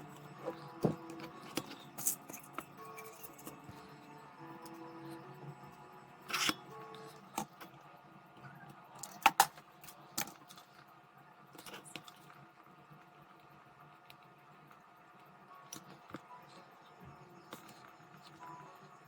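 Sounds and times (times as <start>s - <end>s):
small hard parts clicking: 0.0s - 3.9s, 8.9s - 10.9s.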